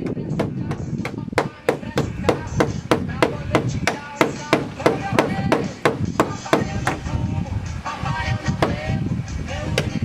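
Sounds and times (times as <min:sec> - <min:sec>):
hammer striking: 0:00.4 - 0:07.0.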